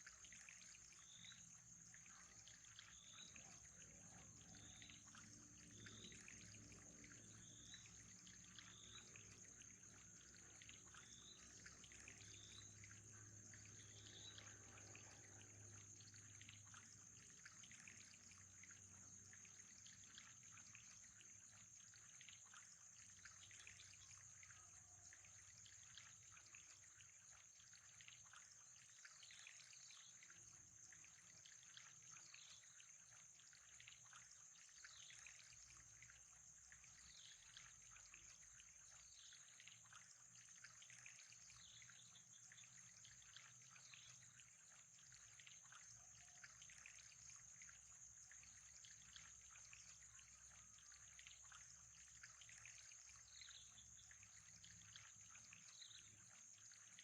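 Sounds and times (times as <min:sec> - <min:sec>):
trickling water: 0:00.0 - 0:57.0.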